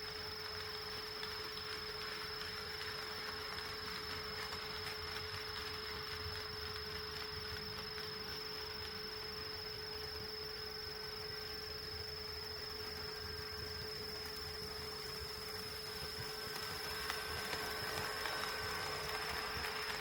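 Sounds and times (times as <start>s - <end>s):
model train electrical hum: 0.0s - 20.0s
high whine: 0.8s - 20.0s
model train rolling: 14.2s - 20.0s.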